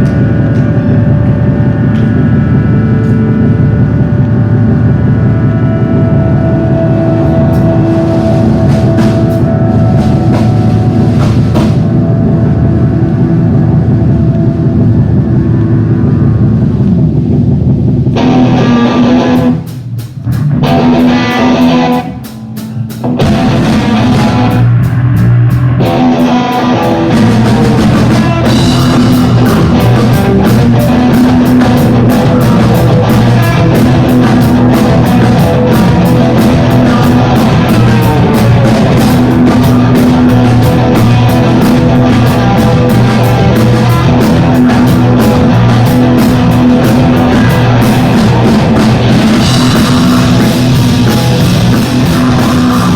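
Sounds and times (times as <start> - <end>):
live rock band playing: 0.0 - 52.9
drum beat: 7.1 - 12.1, 18.2 - 52.9.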